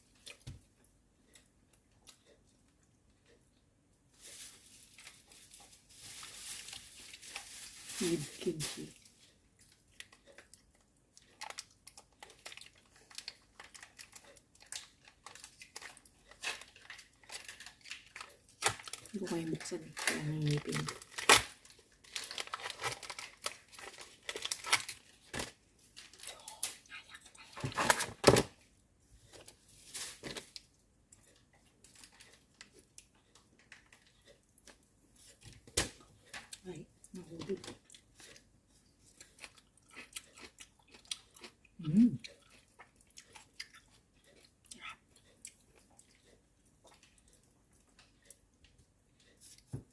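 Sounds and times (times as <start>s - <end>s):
chewing food close-up: 0.0s - 7.5s, 8.9s - 25.2s, 30.5s - 49.7s.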